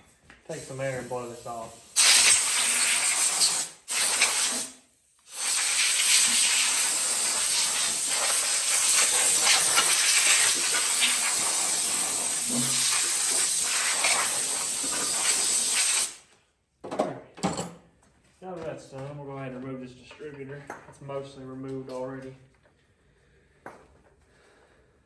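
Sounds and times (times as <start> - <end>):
compressed air blow gun hissing: 0.5 - 16.2.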